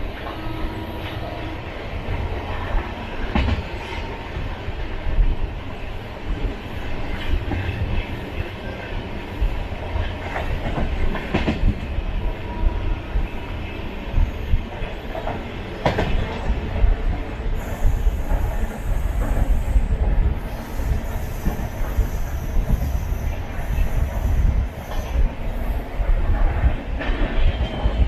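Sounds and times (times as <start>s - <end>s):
train wheels rumbling on track: 0.0s - 28.0s.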